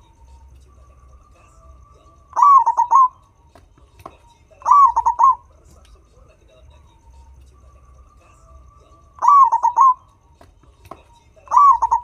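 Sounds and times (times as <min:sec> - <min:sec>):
turtledove cooing: 0:02.3 - 0:03.2, 0:04.6 - 0:05.5, 0:08.3 - 0:10.0, 0:11.4 - 0:12.0.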